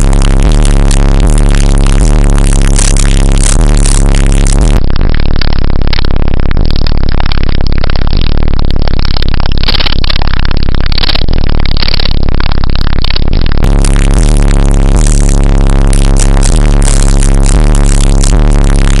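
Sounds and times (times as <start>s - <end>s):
loud bass-heavy music: 0.0s - 19.0s.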